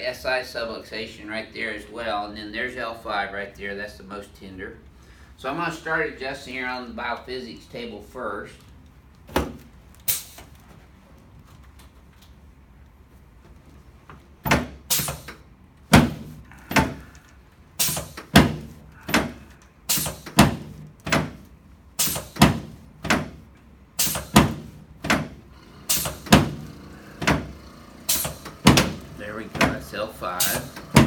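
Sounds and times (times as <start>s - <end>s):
adjusting table sharp knocks: 27.2s - 29.8s.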